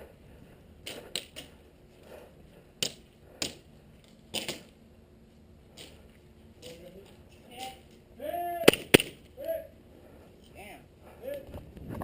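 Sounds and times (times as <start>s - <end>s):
airsoft gun shots: 8.6s - 9.2s.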